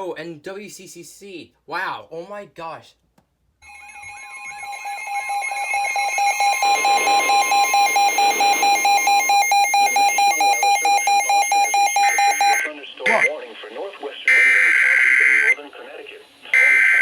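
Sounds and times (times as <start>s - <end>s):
pulsing alarm tone: 3.6s - 13.3s, 16.6s - 17.0s.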